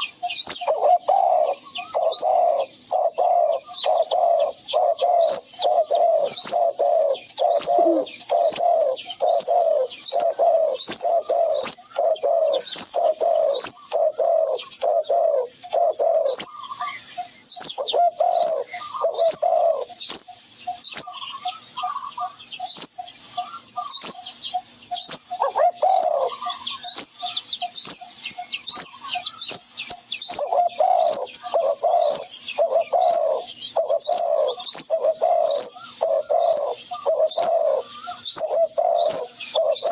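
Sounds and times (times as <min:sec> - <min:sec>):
birds calling with low notes: 0:00.0 - 0:39.9
sharp high bird chirps: 0:15.5 - 0:39.9.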